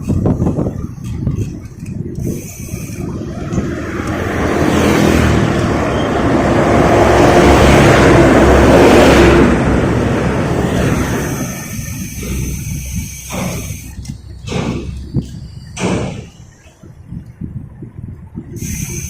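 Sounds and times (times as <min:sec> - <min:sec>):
road noise: 0:00.0 - 0:19.0
vehicle engine passing: 0:03.0 - 0:15.5.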